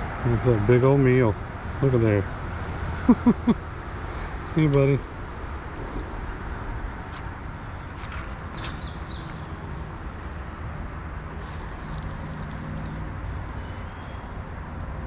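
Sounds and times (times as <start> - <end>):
songbird chirping: 7.7 - 9.9, 12.8 - 14.9.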